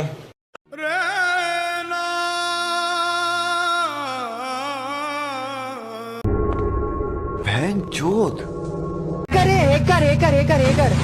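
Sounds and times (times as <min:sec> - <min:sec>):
person singing long note: 0:00.7 - 0:06.5
faint low drone: 0:06.3 - 0:10.1.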